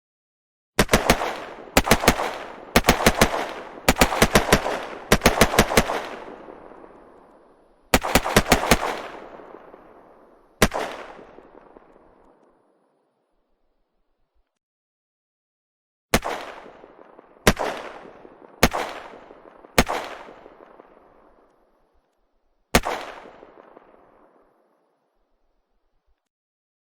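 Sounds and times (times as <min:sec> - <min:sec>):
automatic gunfire bursts: 0:00.8 - 0:06.9, 0:07.9 - 0:09.8.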